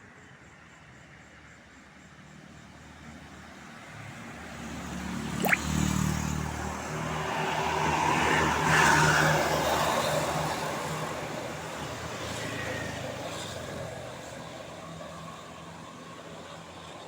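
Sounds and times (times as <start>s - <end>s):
sharp rising whistle: 5.4s - 5.7s.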